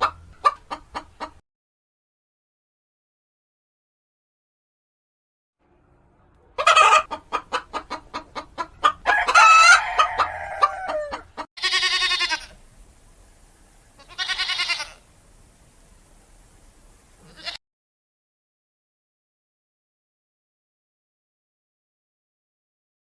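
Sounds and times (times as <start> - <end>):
chickens clucking: 0.0 - 1.4, 6.4 - 11.5
chicken squawk: 6.5 - 12.6
rooster crowing: 6.6 - 7.1, 8.8 - 11.4.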